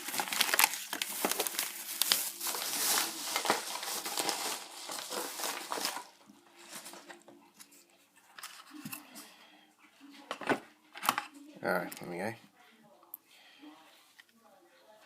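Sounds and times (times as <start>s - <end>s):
packaging crinkling: 0.0s - 7.2s.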